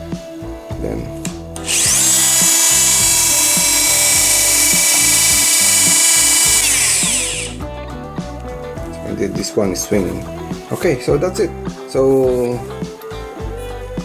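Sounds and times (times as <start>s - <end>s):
oscillating multi-tool motor whine: 1.6s - 7.6s.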